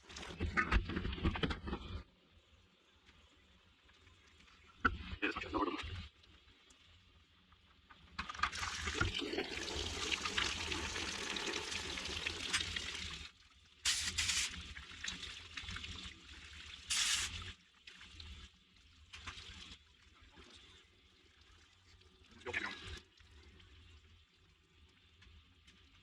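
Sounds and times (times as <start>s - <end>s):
coolant draining and splashing: 7.8s - 26.0s.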